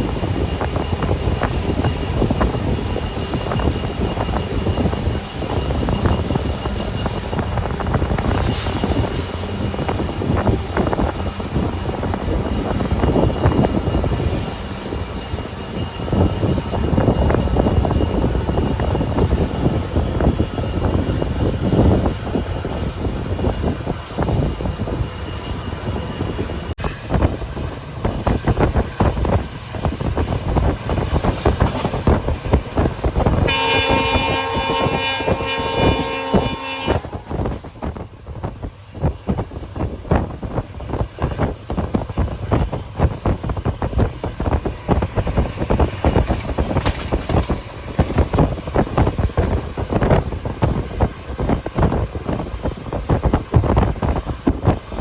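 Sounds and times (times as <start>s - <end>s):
train wheels clattering on rails: 0.0s - 55.0s
multi-tone locomotive horn: 33.1s - 37.7s.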